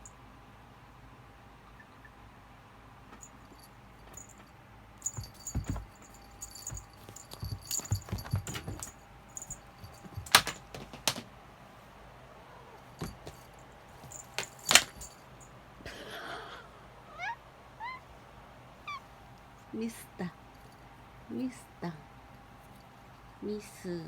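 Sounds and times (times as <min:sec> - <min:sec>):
cat toy jingling and rattling: 0:03.2 - 0:11.2, 0:13.0 - 0:15.4
soft thumps: 0:04.1 - 0:11.3, 0:13.0 - 0:15.2.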